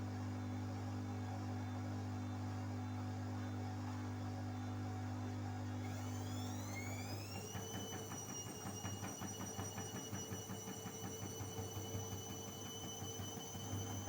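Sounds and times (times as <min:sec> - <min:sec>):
washing machine motor whine: 0:05.6 - 0:14.0.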